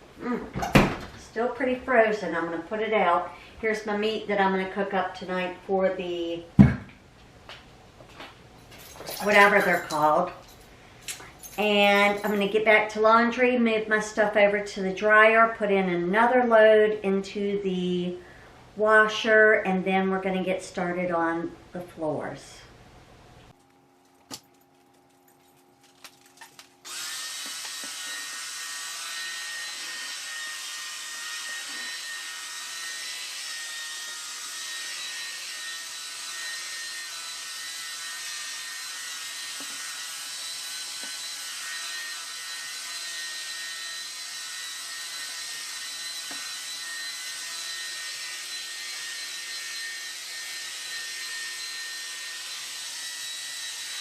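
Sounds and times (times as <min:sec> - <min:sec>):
floor cleaner motor whine: 0:39.5 - 0:53.9.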